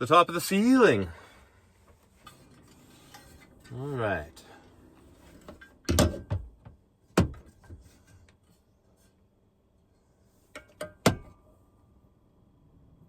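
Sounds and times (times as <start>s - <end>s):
tools knocking and clinking: 5.5s - 7.8s.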